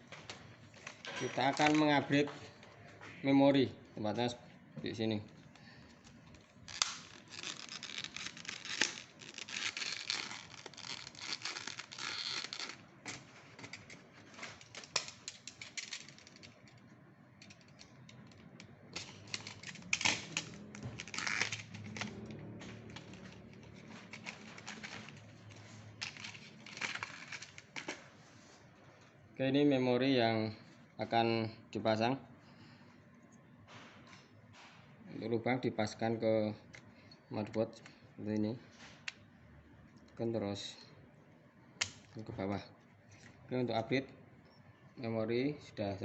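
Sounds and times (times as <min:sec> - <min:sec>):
plastic packaging crinkling: 0:06.4 - 0:16.8, 0:18.9 - 0:28.1.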